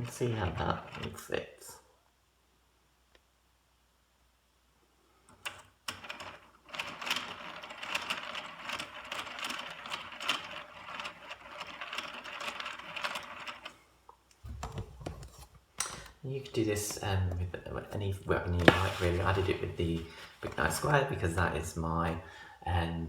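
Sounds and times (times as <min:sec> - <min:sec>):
plastic gears clicking and rattling: 0:05.4 - 0:13.8.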